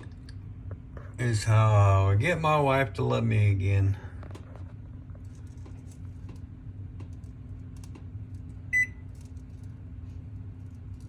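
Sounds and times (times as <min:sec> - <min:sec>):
low steady hum: 0:00.0 - 0:11.0
stove electronic beep: 0:08.7 - 0:09.0.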